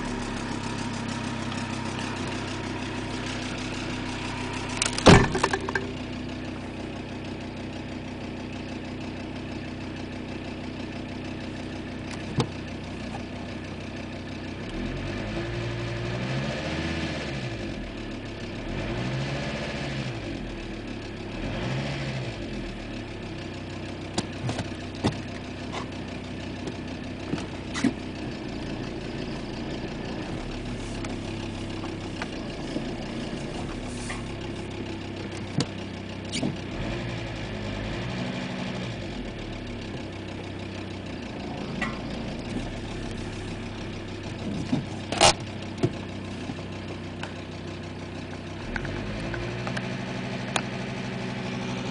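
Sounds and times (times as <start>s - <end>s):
diesel engine idling with ticking: 0.0s - 5.0s, 5.8s - 51.9s
engine revving: 14.6s - 17.9s, 18.6s - 20.6s, 21.2s - 22.7s, 36.3s - 40.4s, 41.2s - 46.6s, 48.4s - 51.9s.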